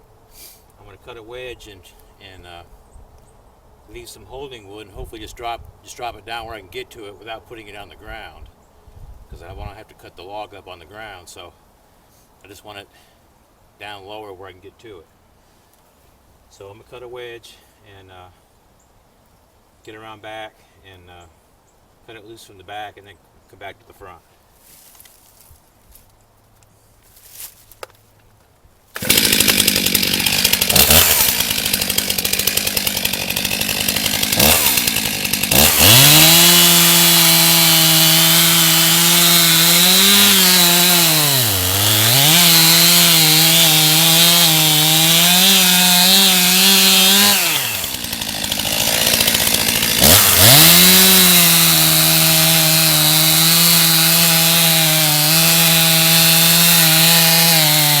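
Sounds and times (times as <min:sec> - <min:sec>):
chainsaw cutting wood: 0:28.9 - 0:58.0.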